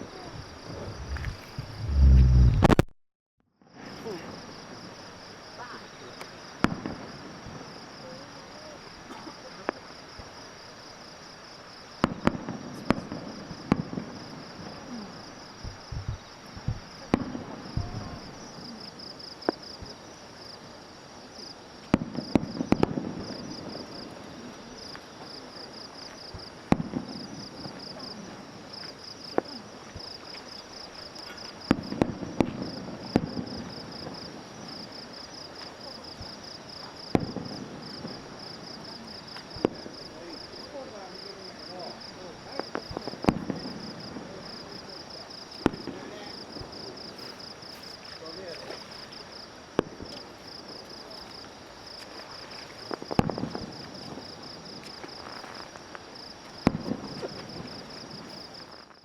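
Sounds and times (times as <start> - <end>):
insects trilling: 3.9 - 59.0
fireworks bangs and crackling: 6.6 - 7.9, 12.0 - 15.0, 15.6 - 18.7, 21.8 - 25.7, 26.3 - 34.8, 35.5 - 40.9, 41.7 - 47.4, 49.8 - 51.2, 52.0 - 55.8, 56.4 - 59.0.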